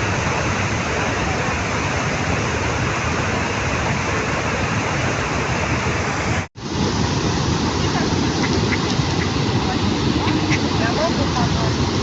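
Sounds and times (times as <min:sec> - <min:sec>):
waterfall rushing: 0:00.0 - 0:12.0.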